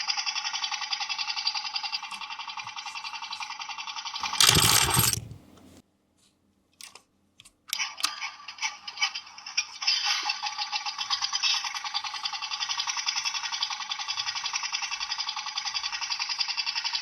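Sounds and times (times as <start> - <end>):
small clicks: 4.2 - 5.7.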